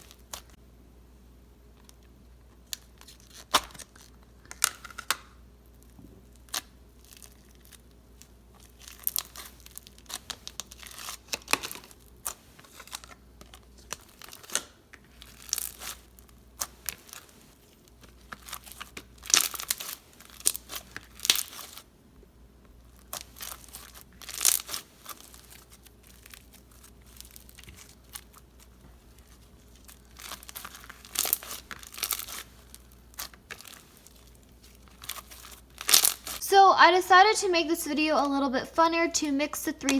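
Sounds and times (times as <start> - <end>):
slime crackling and popping: 0.0 - 0.6, 2.6 - 21.9, 22.8 - 36.4
sticky tearing: 23.1 - 36.4.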